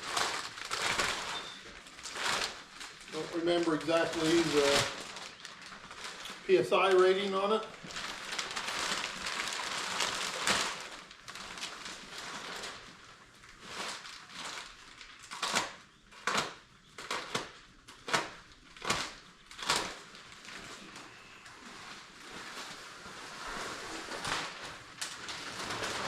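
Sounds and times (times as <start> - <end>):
packaging rustling and crackling: 0.0 - 26.0.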